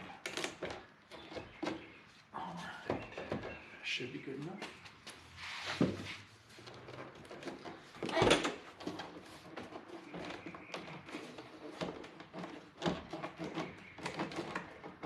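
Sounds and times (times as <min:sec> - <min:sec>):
hard plastic clicking and scraping: 0:00.0 - 0:02.0, 0:06.6 - 0:15.0.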